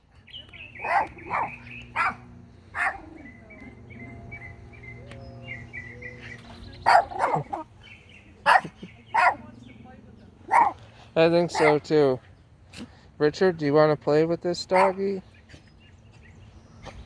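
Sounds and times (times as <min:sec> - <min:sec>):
small dog barking: 0:00.8 - 0:03.3, 0:06.8 - 0:07.7, 0:08.4 - 0:09.4, 0:10.5 - 0:10.8, 0:11.5 - 0:11.8, 0:14.7 - 0:15.0.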